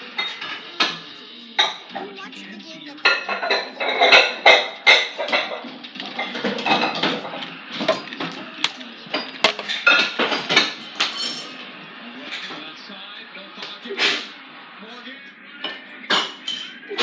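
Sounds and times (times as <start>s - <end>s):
plastic hockey sticks and ball clacking: 6.0s - 10.7s.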